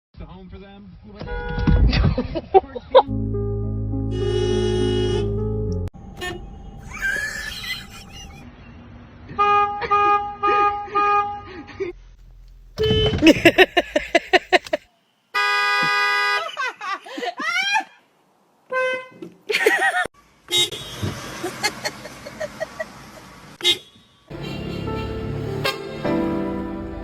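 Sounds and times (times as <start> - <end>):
car horn honking: 1.2 - 1.8, 4.1 - 6.6, 9.3 - 11.5, 15.3 - 16.5, 18.7 - 19.2, 20.5 - 21.2, 23.6 - 27.0.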